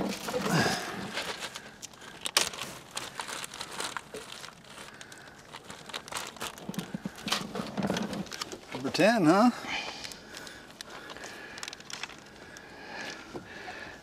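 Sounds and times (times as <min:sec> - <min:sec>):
crinkling and rustling: 0:00.0 - 0:13.9.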